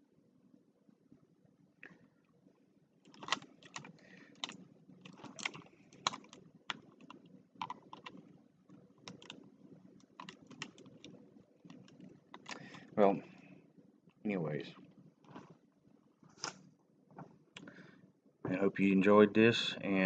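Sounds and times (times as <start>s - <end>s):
plastic puzzle pieces clicking: 3.1s - 8.2s, 9.1s - 9.4s, 10.2s - 11.1s, 11.7s - 12.8s.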